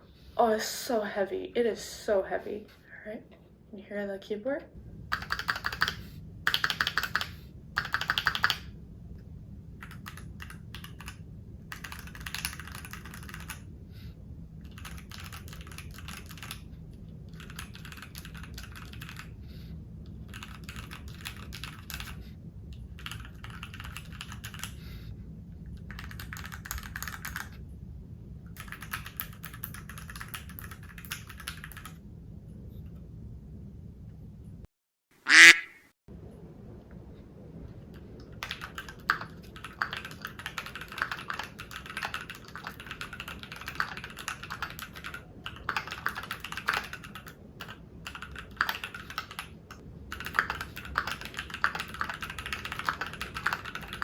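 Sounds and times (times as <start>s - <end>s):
mechanical keyboard key clacks: 5.1s - 8.6s.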